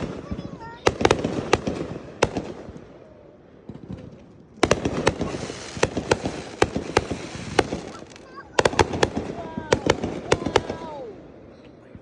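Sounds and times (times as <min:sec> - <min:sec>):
fireworks bangs and pops: 0:00.0 - 0:03.0, 0:03.6 - 0:12.0
fireworks crackling: 0:00.0 - 0:12.0.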